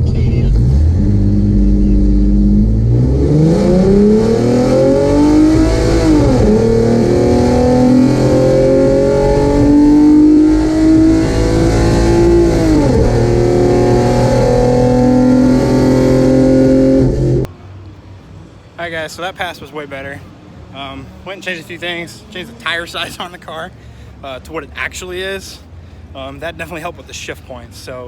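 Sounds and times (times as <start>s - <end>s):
car engine at full throttle: 0.0s - 17.5s.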